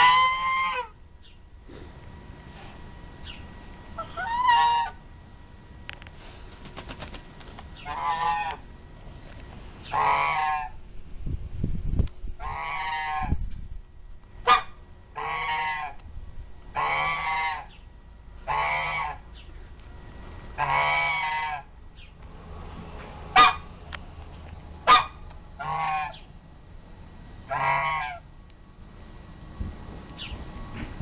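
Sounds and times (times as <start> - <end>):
goose honking: 0.0 - 1.0, 4.0 - 5.0, 7.8 - 8.6, 9.9 - 10.8, 12.4 - 13.3, 14.4 - 16.0, 16.7 - 17.7, 18.4 - 19.2, 20.6 - 21.7, 23.3 - 23.7, 24.8 - 26.3, 27.5 - 28.3.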